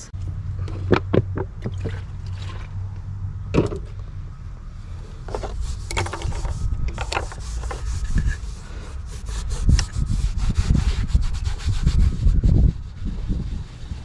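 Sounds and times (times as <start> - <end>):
steady low rumble: 0.0 - 14.0
rag wiping engine parts: 5.1 - 14.0.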